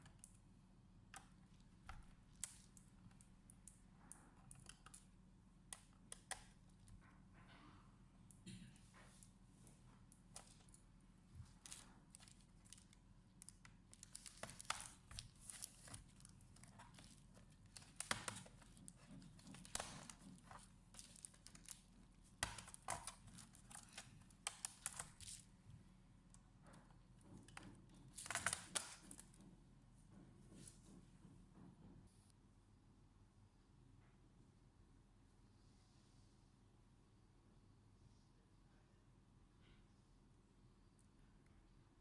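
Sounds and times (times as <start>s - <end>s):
crinkling and rustling wrapping: 8.9s - 25.9s, 26.7s - 29.5s
small clicks: 11.5s - 25.5s, 27.4s - 29.4s.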